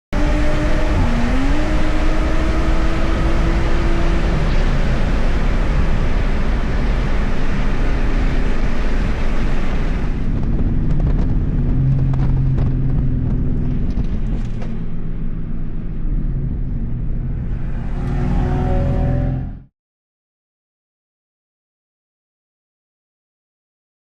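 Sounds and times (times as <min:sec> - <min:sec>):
car engine running hard: 0:00.1 - 0:19.6
wind and road noise: 0:00.1 - 0:19.7
exhaust clicks and pops: 0:10.2 - 0:14.9.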